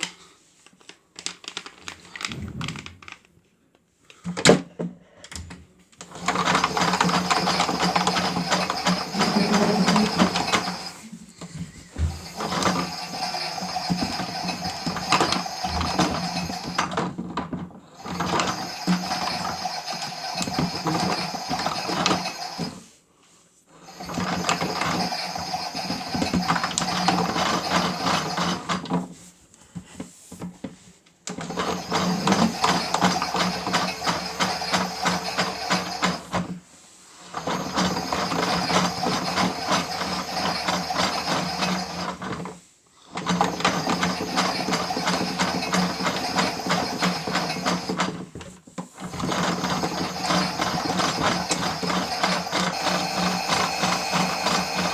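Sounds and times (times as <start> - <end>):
toy motor humming with gear rattle: 6.1 - 11.2, 12.0 - 17.1, 18.0 - 22.8, 24.0 - 28.8, 31.4 - 36.6, 37.4 - 42.4, 43.2 - 48.2, 49.0 - 54.9.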